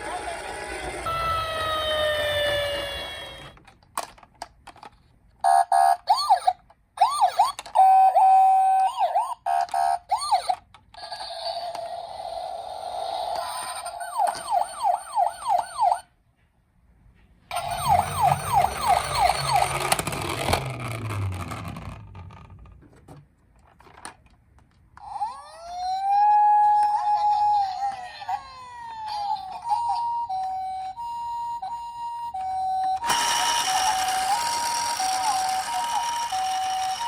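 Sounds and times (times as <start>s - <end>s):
fast yelping toy siren: 0.0s - 3.6s, 5.5s - 16.1s, 17.5s - 20.2s, 25.0s - 37.0s
rising and falling siren: 0.8s - 3.6s, 13.3s - 16.0s, 17.5s - 20.4s.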